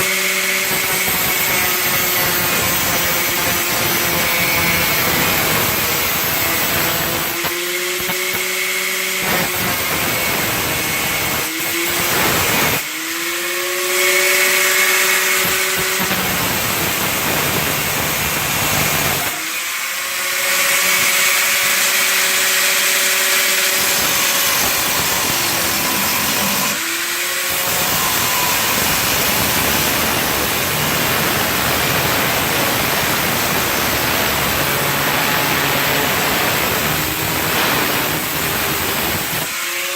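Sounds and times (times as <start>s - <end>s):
power grinder grinding metal: 0.0s - 39.9s.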